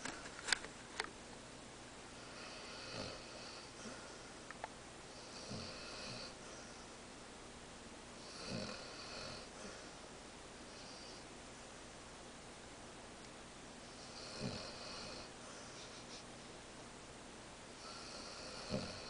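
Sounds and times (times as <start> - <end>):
dog snoring: 2.2 - 4.1, 5.1 - 6.8, 8.2 - 9.9, 10.7 - 11.2, 13.9 - 16.2, 17.8 - 19.0.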